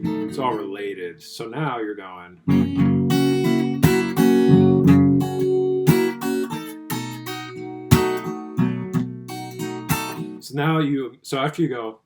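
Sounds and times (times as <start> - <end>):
fingerstyle acoustic guitar: 0.0 - 0.7, 2.4 - 10.5.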